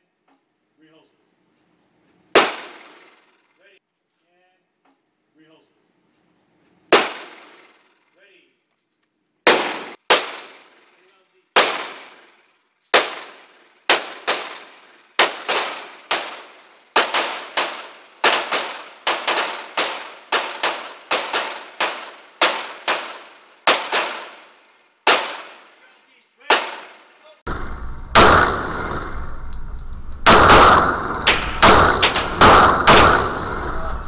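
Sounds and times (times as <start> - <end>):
pistol shots with echo: 2.4 - 3.3, 6.9 - 7.8, 9.5 - 11.0, 11.6 - 25.7, 26.5 - 29.4, 30.2 - 34.0.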